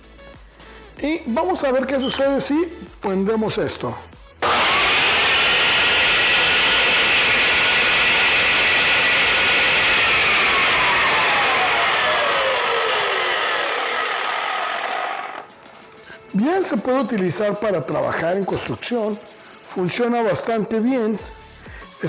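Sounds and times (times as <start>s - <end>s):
power tool motor whining: 4.4s - 15.6s.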